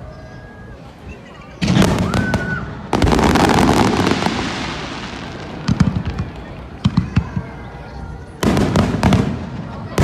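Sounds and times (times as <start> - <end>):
fireworks booming: 1.6 - 7.8, 8.4 - 10.0
fireworks crackling: 1.6 - 10.0.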